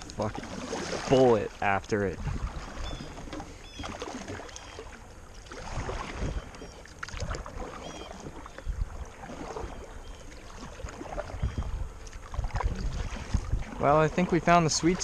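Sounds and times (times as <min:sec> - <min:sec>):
wind buffeting microphone: 0:00.0 - 0:03.8, 0:05.6 - 0:06.6, 0:08.2 - 0:09.8, 0:10.8 - 0:15.0
water splashing and lapping: 0:00.0 - 0:15.0.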